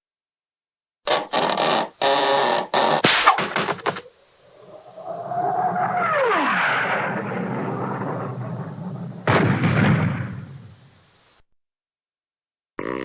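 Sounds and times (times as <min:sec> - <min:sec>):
cartoon crash: 0:02.8 - 0:04.1, 0:04.8 - 0:10.8.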